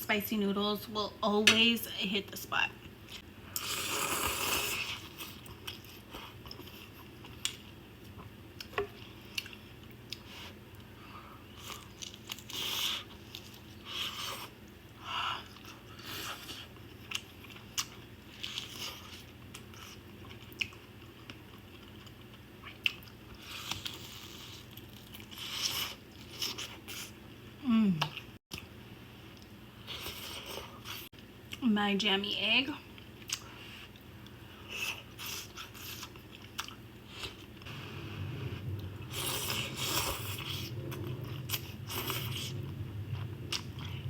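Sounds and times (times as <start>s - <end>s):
person chewing noodles: 3.1s - 27.2s, 33.0s - 44.0s.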